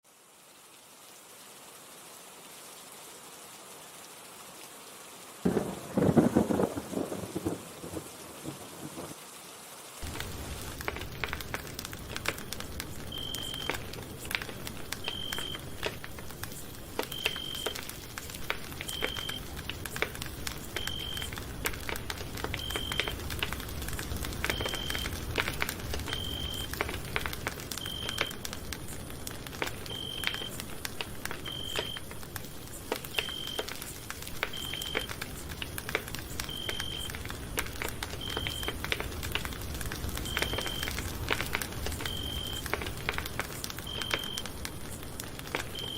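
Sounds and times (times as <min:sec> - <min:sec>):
campfire crackling: 0:04.2 - 0:09.2, 0:09.8 - 0:45.9.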